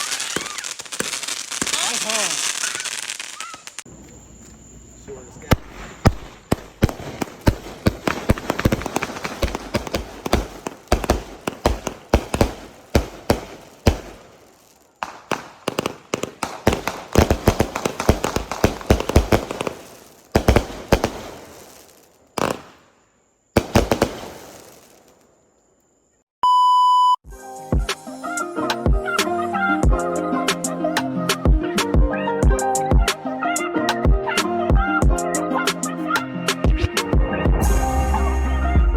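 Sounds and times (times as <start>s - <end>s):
fireworks bangs and crackles: 0.0s - 3.9s, 5.3s - 23.0s, 23.6s - 25.3s
electronic beep: 26.4s - 27.2s.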